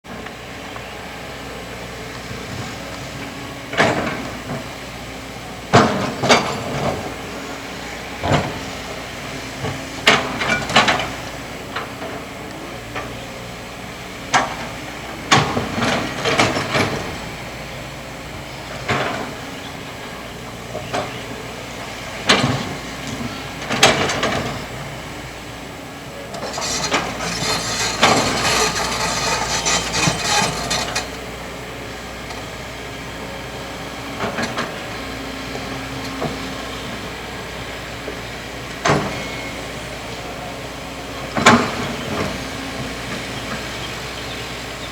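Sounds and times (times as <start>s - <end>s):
excavator engine running: 0.1s - 44.9s
bucket clanking and scraping: 26.3s - 31.3s
rattling: 26.4s - 31.2s.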